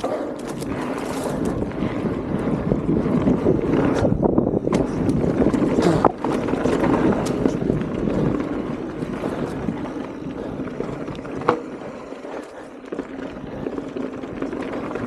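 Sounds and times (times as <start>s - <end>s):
wind on microphone: 0.0s - 11.6s
bike rattling clicks and knocks: 0.0s - 15.0s
bike tyre rumble on dirt: 0.0s - 15.0s.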